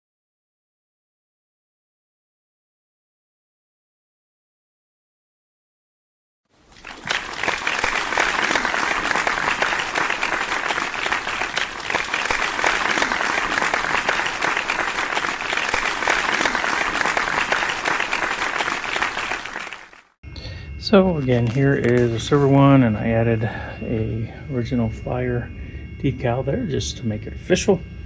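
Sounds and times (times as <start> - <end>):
crowd applauding: 6.6 - 20.2, 21.2 - 22.7.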